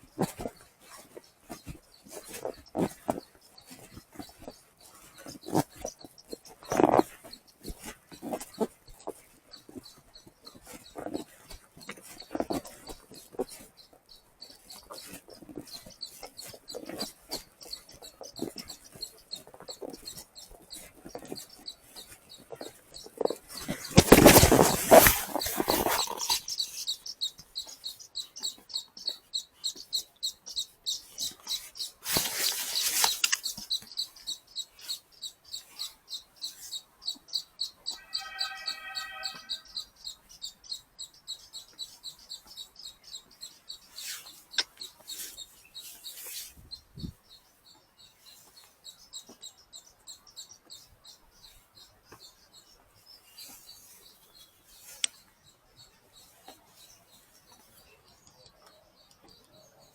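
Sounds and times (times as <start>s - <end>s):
bird chirping: 0.0s - 59.9s
short buzzy bird call: 38.0s - 39.7s.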